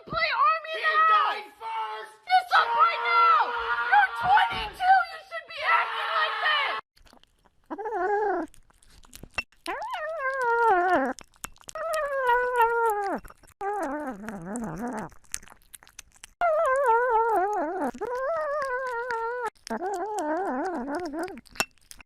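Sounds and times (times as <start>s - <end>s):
dog howling: 16.4s - 21.3s.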